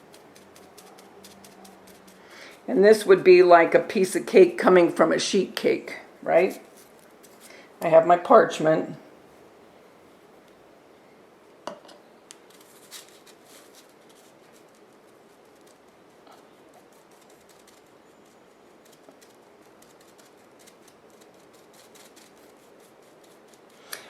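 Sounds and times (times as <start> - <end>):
parchment paper rustling: 0.0 - 2.7, 12.4 - 23.9.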